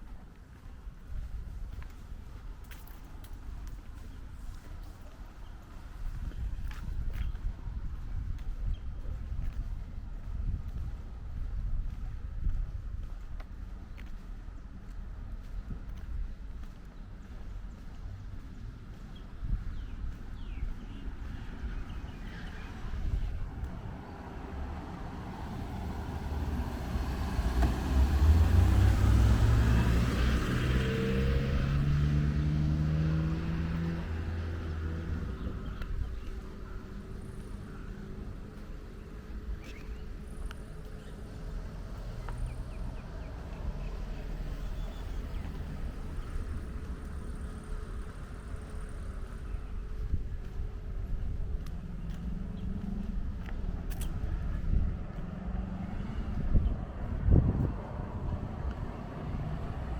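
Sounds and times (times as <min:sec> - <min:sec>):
quiet street background: 0:00.0 - 0:59.9
car accelerating past: 0:23.9 - 0:35.4, 0:54.3 - 0:59.9.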